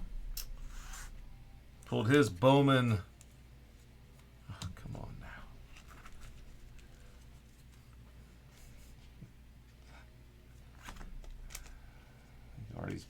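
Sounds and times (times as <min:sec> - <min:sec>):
low room hum: 0:00.0 - 0:13.0
plastic sleeves rustling: 0:03.2 - 0:09.2.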